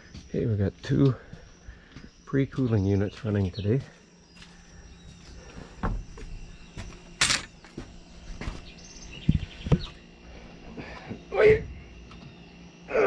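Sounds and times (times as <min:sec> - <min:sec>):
insect noise: 0:00.0 - 0:13.0
steady low hum: 0:00.0 - 0:13.0
bird chirps: 0:01.3 - 0:10.2.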